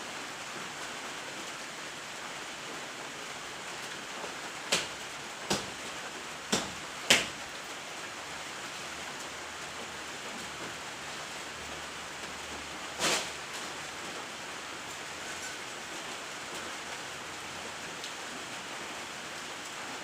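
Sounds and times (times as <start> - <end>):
rain falling: 0.0 - 20.0
sharp knocks: 5.5 - 5.7, 6.5 - 7.4.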